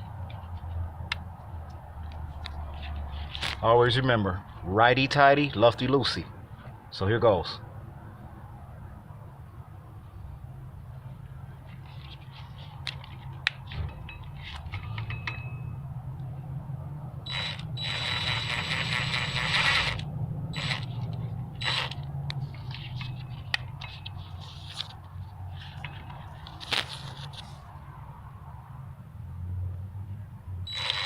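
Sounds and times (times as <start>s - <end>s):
metallic clicks and scraping: 11.7s - 15.7s, 17.3s - 27.7s
power drill tightening bolts: 17.3s - 21.0s, 21.6s - 22.0s, 30.7s - 31.0s.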